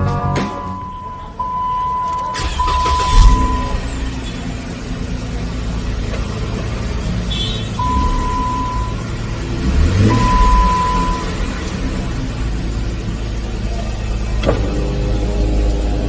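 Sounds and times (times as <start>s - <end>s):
car engine idling and revving: 0.0s - 16.0s
long even beeps: 0.5s - 4.0s, 7.8s - 9.2s, 10.0s - 11.6s.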